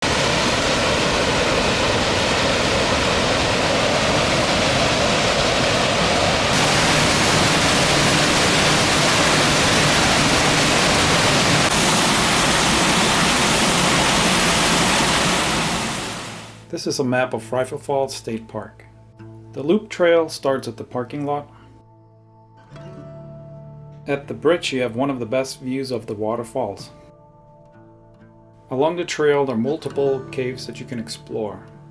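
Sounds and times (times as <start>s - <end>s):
waterfall rushing: 0.0s - 16.6s.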